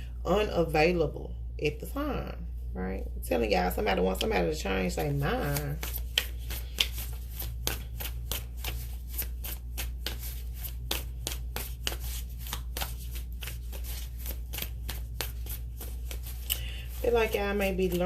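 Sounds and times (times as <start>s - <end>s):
steady low hum: 0.0s - 18.0s
cards being shuffled: 5.0s - 18.0s.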